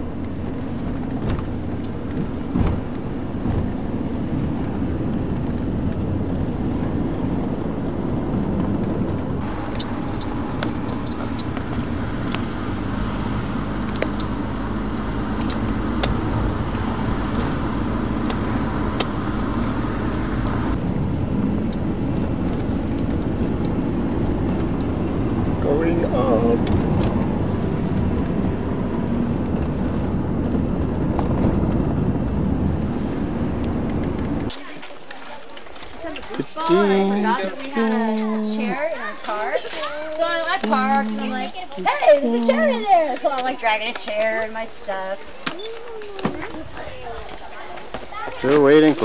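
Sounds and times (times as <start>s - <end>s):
car engine and road noise: 0.0s - 49.0s.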